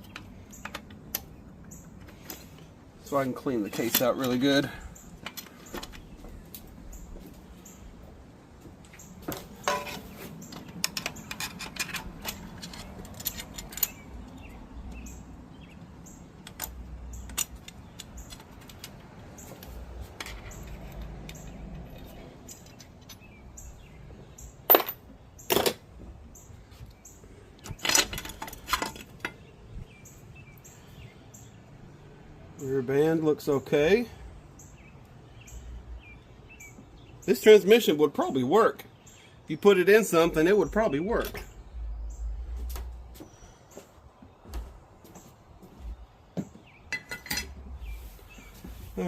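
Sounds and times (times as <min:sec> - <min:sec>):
metal parts clinking: 0:09.6 - 0:10.1, 0:10.8 - 0:14.1, 0:24.6 - 0:25.8, 0:27.7 - 0:29.4.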